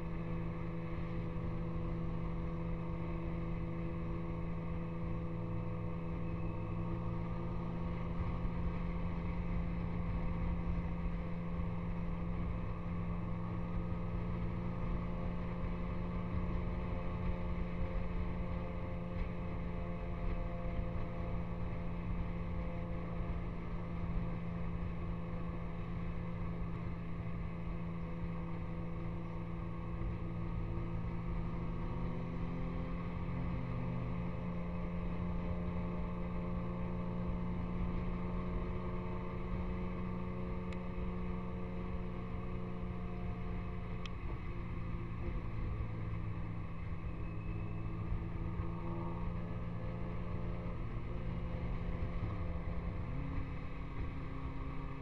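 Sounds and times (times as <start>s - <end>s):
vehicle engine running steadily: 0.0s - 55.0s.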